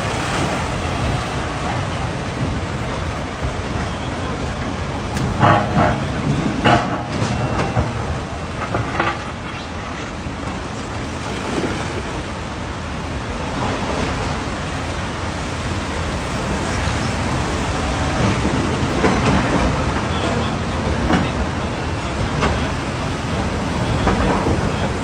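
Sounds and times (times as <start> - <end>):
heavy vehicle running: 0.0 - 11.6, 12.3 - 25.0.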